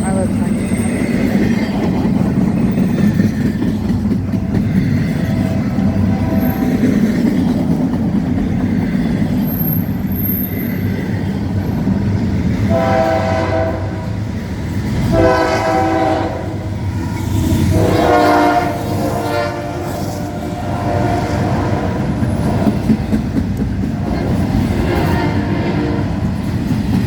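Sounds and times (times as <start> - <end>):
freight train rumbling: 0.0 - 27.0
locomotive air horn blasts: 12.7 - 14.1, 15.1 - 16.8, 17.6 - 22.1, 24.8 - 26.2.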